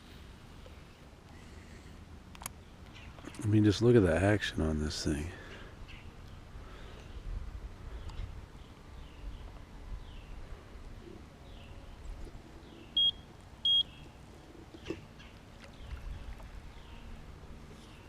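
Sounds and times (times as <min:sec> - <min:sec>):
low outdoor rumble: 0:00.0 - 0:18.0
birds chirping: 0:02.5 - 0:07.3, 0:07.9 - 0:18.0
loud electronic beeps: 0:13.0 - 0:13.9.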